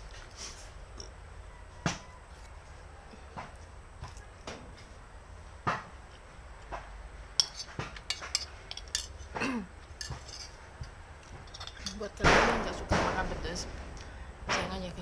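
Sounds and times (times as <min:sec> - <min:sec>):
utensil clinking against bowl: 0:07.4 - 0:13.4.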